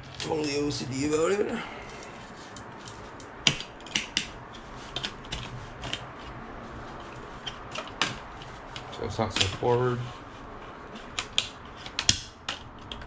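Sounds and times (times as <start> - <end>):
hardware clicks and knocks: 3.2 - 4.4.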